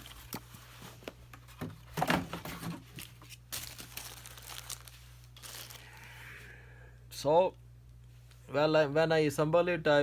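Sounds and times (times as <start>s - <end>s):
plastic and cardboard rustling: 0.0s - 5.8s.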